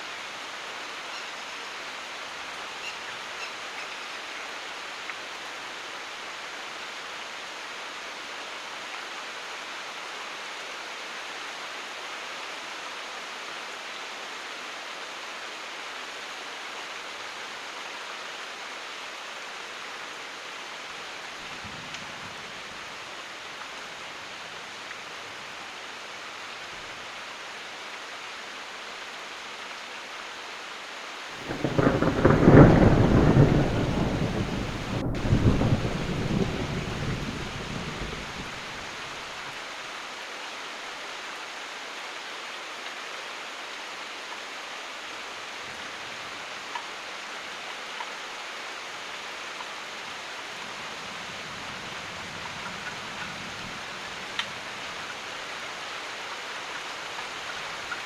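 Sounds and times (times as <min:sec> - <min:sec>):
heavy rain: 0:00.0 - 0:58.0
thunderclap rumble: 0:31.4 - 0:38.9.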